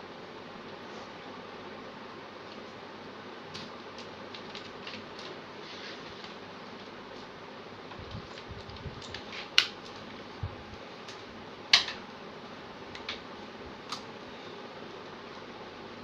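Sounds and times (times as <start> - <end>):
computer hardware clicks and knocks: 11.1 - 12.1.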